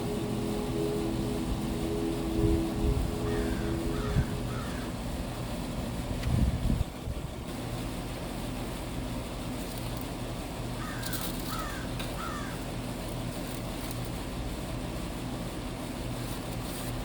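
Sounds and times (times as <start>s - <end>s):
steady low hum: 0.0s - 17.0s
crow cawing: 3.2s - 5.0s, 10.8s - 12.7s.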